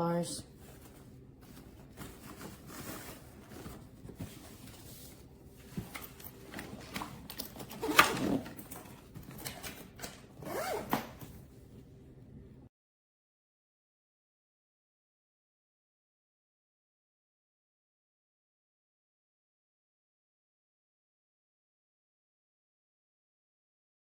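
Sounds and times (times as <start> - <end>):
suitcase zipper pulls: 7.4 - 8.9, 10.4 - 11.3.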